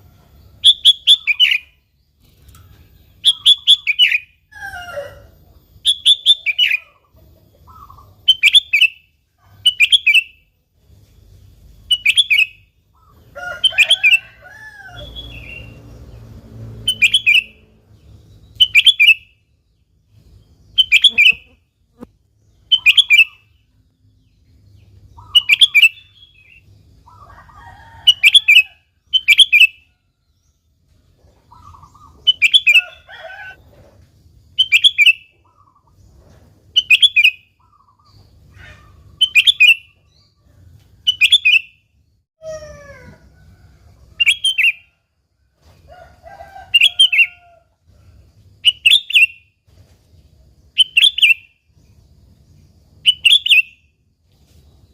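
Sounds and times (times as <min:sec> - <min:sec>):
bulbul calling: 0:03.2 - 0:04.4, 0:18.6 - 0:19.3, 0:20.7 - 0:23.6, 0:25.1 - 0:27.3
faint lower bird calls: 0:20.7 - 0:23.8, 0:34.6 - 0:40.3.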